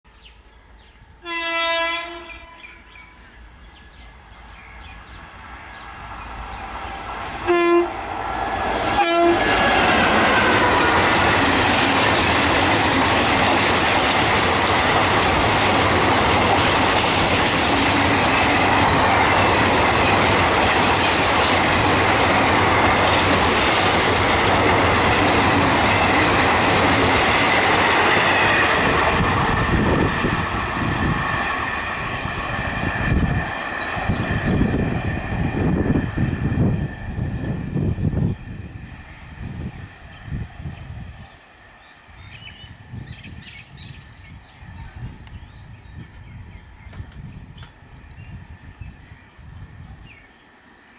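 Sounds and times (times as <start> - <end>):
locomotive horn: 1.2 - 2.9, 7.4 - 8.0, 9.0 - 10.9
train wheels clattering over rails: 8.8 - 32.3.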